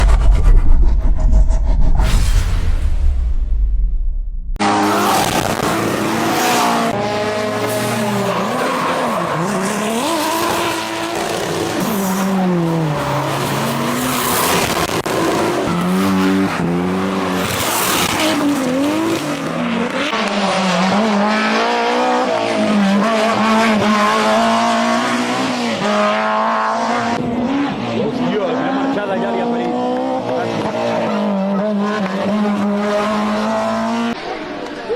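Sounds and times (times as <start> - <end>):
low rumble: 0.0 - 4.6
rally car engine revving: 4.6 - 34.9.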